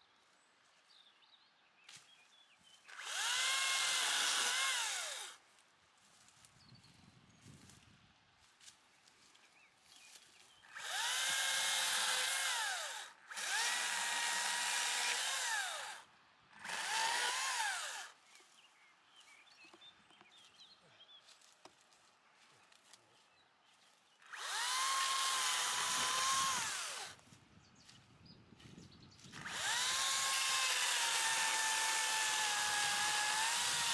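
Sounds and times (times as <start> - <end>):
small petrol engine revving: 3.0 - 5.4, 10.8 - 16.0, 16.6 - 18.1, 24.3 - 27.2, 29.4 - 33.9.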